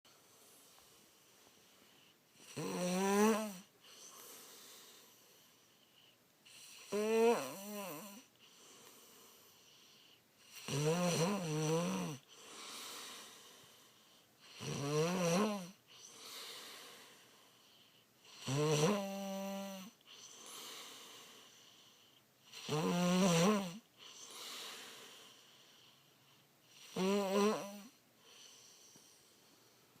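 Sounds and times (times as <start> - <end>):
soft breath: 0.1 - 2.4, 3.7 - 6.4, 12.2 - 14.4, 15.8 - 18.2, 19.9 - 22.4, 23.8 - 26.7, 28.1 - 30.0
girl snoring: 2.4 - 4.3, 6.5 - 8.3, 9.6 - 13.5, 14.4 - 16.7, 18.3 - 21.8, 22.5 - 25.6, 26.7 - 29.0.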